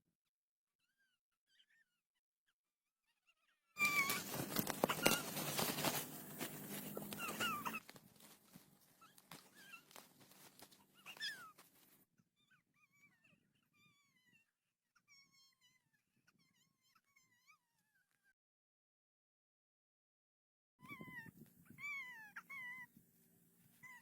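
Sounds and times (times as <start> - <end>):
faint high-pitched whimpering: 0.8 - 2.1, 3.0 - 18.4, 20.8 - 23.0, 23.7 - 24.0.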